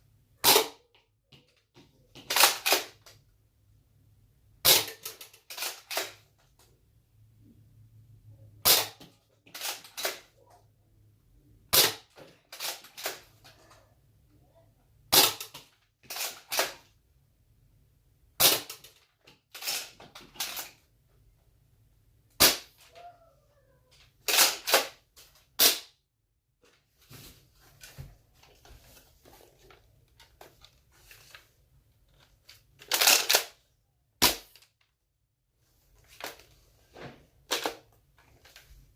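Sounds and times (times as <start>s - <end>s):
toy blaster plastic snaps: 4.7s - 6.2s, 15.1s - 16.8s, 32.8s - 33.6s.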